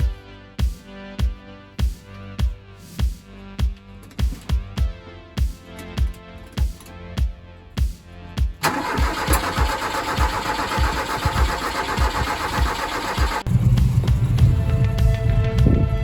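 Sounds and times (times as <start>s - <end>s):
music beat: 0.0s - 16.0s
car engine starting: 8.6s - 15.5s.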